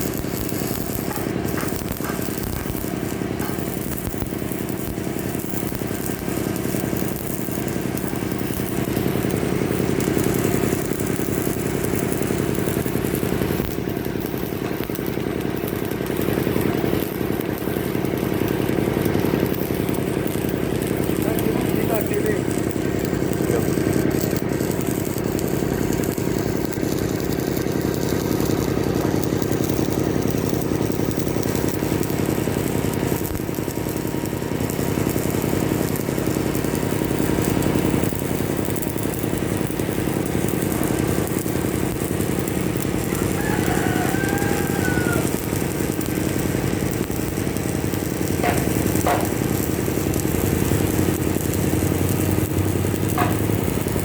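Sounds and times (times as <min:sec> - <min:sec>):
engine drone: 0:00.0 - 0:54.0
rooster crowing: 0:43.0 - 0:45.9
sharp clicks: 0:48.4 - 0:54.0.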